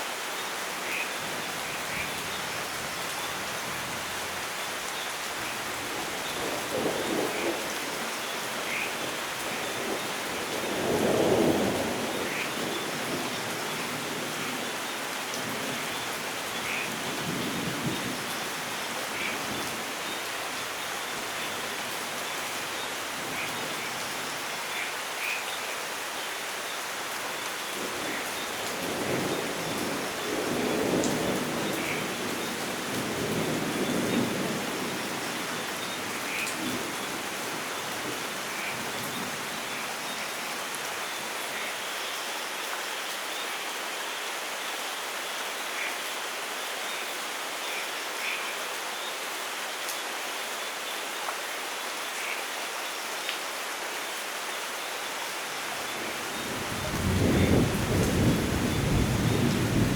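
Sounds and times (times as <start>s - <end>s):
steady rain falling: 0.0s - 59.9s
thunder rumble: 56.4s - 59.9s.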